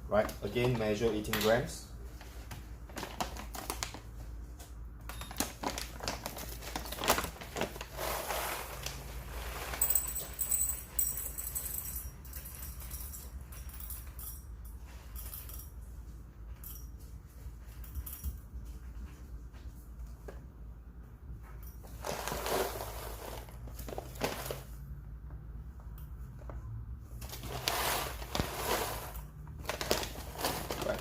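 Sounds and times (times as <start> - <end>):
coffee beans rattling into container: 5.4 - 11.8, 22.0 - 24.7, 27.3 - 31.0.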